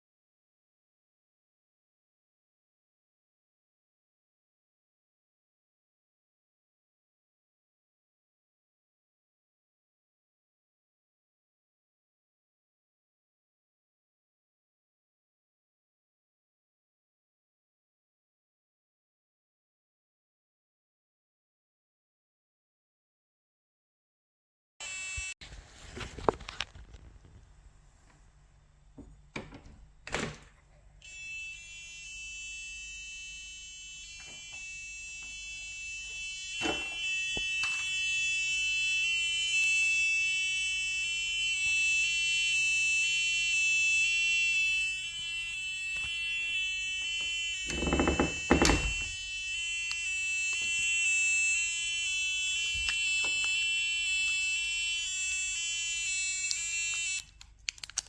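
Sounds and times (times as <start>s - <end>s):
buzzer alarm tune: 24.8s - 25.4s, 31.0s - 57.3s.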